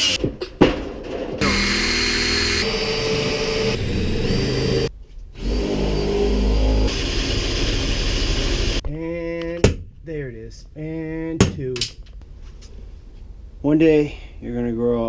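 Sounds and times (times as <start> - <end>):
electric drill drilling metal: 1.4 - 8.8.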